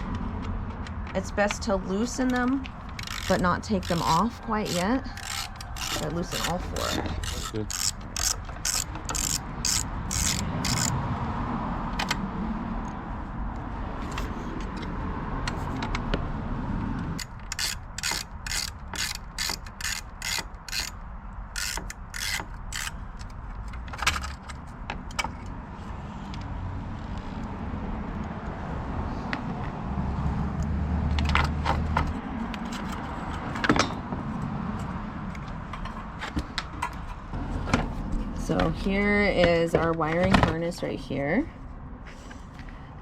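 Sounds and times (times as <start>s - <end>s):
ratchet handle clicking: 2.2s - 11.0s, 17.2s - 23.4s.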